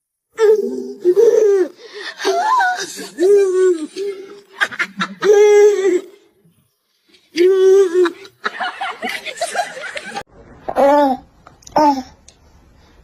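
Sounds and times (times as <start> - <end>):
baby laughing: 0.4 - 6.2.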